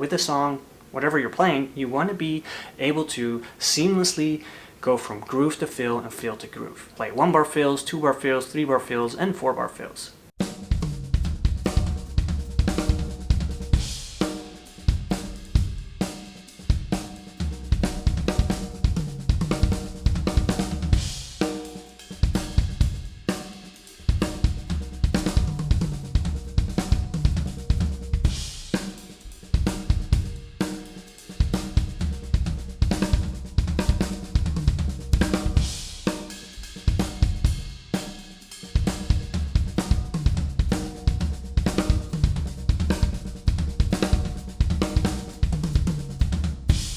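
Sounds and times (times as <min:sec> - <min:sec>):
drum kit playing: 0:10.4 - 0:46.9.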